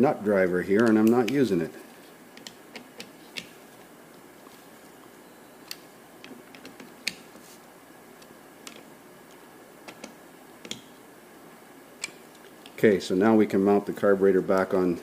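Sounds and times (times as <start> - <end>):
hand tools clicking and tapping: 0.8 - 1.5, 2.3 - 3.6, 5.7 - 7.4.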